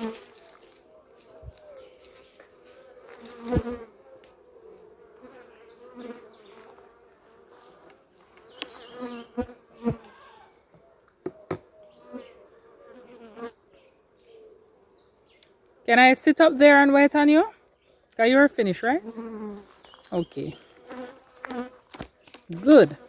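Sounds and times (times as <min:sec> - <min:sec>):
bees buzzing: 0:00.0 - 0:10.2, 0:11.3 - 0:13.8, 0:18.5 - 0:23.0.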